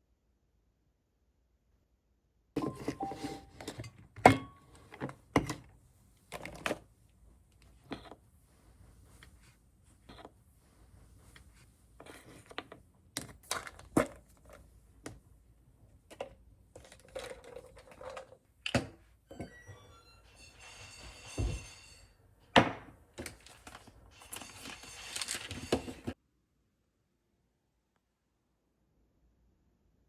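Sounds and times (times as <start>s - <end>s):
objects knocking and thunking: 2.6s - 6.8s, 16.0s - 26.2s
scraping or rustling: 20.3s - 22.2s, 23.3s - 26.2s.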